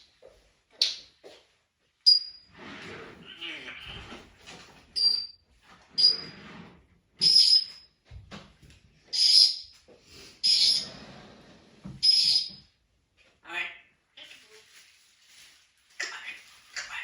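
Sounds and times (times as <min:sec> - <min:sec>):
parrot squeaking: 0:05.0 - 0:05.4, 0:06.0 - 0:06.3, 0:07.2 - 0:07.8, 0:09.1 - 0:09.7, 0:10.4 - 0:10.8, 0:12.0 - 0:12.6.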